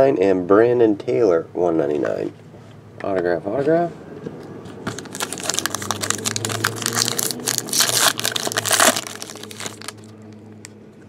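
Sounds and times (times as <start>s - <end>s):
wrapper crinkling and crackling: 4.9s - 10.7s.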